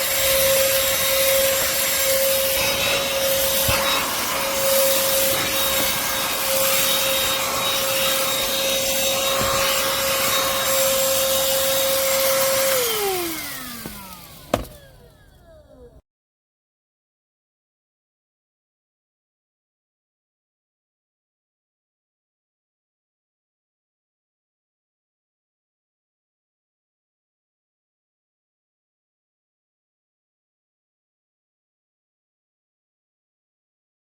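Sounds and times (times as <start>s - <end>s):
handheld vacuum whining: 0.0s - 16.0s.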